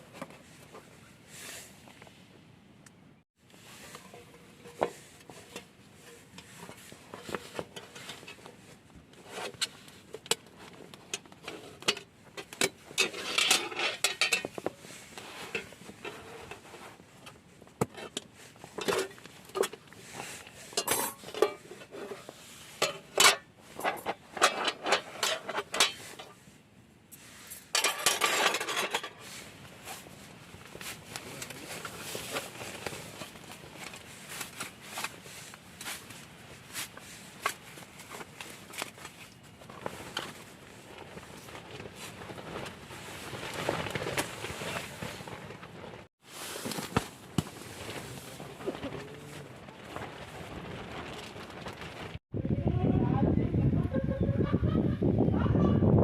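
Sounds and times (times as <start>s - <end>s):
cookware and utensils clinking: 11.8s - 14.6s, 20.7s - 22.2s, 27.7s - 29.3s.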